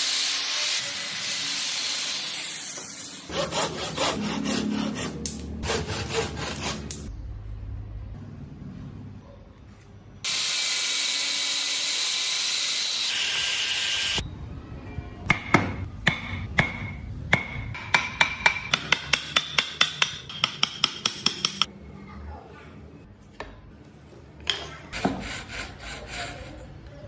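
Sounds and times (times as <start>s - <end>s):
hammer tapping on metal: 15.3s - 21.7s.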